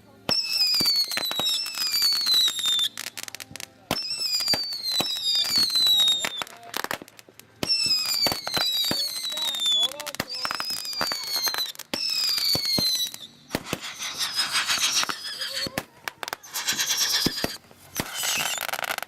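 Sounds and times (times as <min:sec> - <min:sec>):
fireworks hissing and crackling: 0:00.0 - 0:19.0
firework whistles sliding down: 0:00.3 - 0:03.1, 0:04.0 - 0:06.6, 0:07.6 - 0:19.0
fireworks sharp pops: 0:00.3 - 0:19.0.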